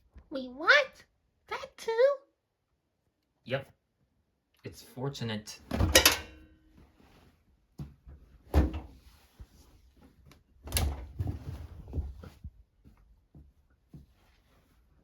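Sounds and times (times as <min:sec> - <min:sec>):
knocks and clunks of handling: 0:05.7 - 0:06.5.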